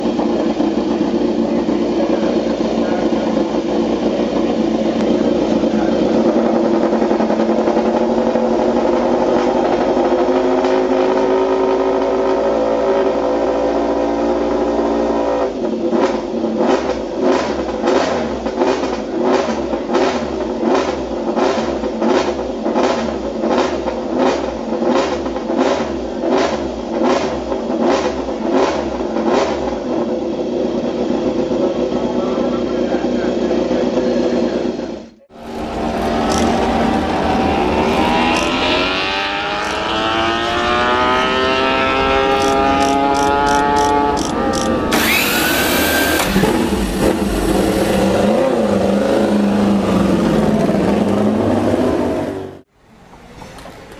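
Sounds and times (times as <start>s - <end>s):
motorcycle throttle blips: 0.0s - 14.2s, 14.8s - 52.6s
motorcycle engine idling: 0.0s - 52.2s.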